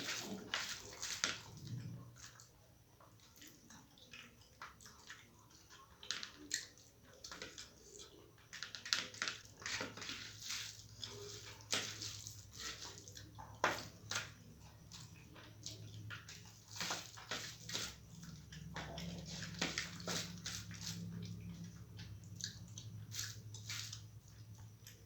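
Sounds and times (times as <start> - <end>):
wet chewing and smacking: 0.0 - 25.0.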